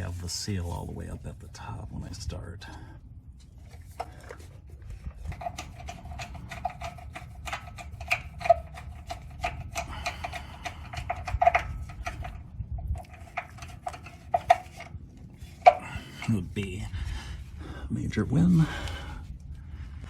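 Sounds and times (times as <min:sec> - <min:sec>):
small parts clicking and rattling: 0:03.7 - 0:16.3.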